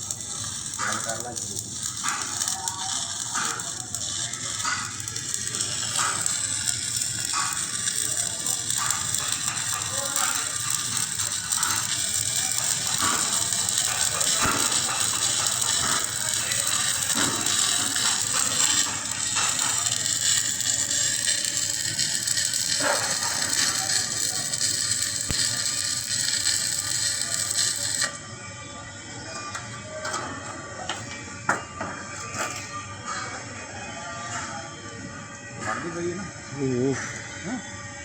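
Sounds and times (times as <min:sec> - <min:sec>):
welding arc crackling: 0:00.0 - 0:28.2.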